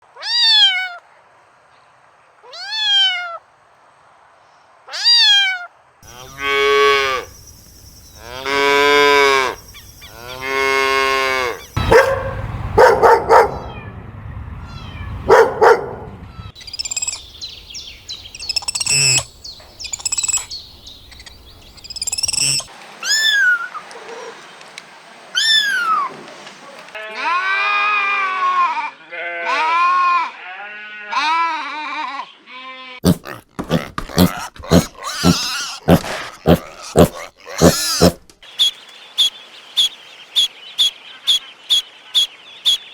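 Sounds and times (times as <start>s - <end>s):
cat meowing: 0.2s - 1.0s, 2.5s - 3.4s, 4.9s - 5.7s, 13.5s - 14.0s, 14.6s - 15.5s, 23.0s - 24.3s
cow mooing: 8.2s - 12.2s
sharp animal calls: 14.7s - 24.4s, 33.0s - 38.7s.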